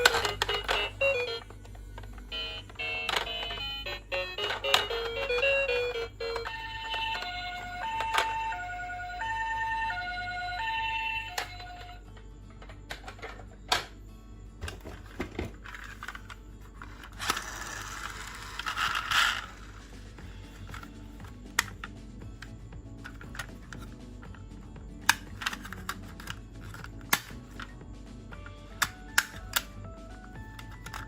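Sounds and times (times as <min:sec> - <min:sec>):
toy two-tone ambulance siren: 0:00.0 - 0:01.5, 0:02.3 - 0:12.0
plastic toy clicks and rattles: 0:15.5 - 0:19.7, 0:23.0 - 0:23.9, 0:25.0 - 0:27.7, 0:30.5 - 0:31.0.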